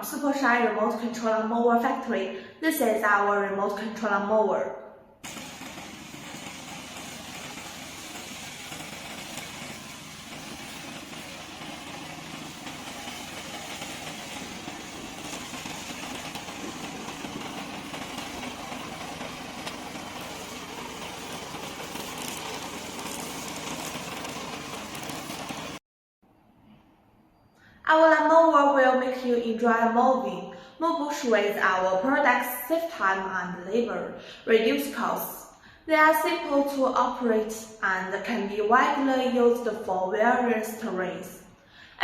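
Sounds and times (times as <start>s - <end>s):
mower engine running: 5.2s - 25.8s.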